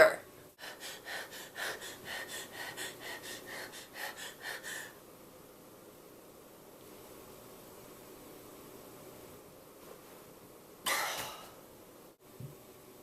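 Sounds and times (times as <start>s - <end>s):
person panting quickly: 0.6s - 5.0s.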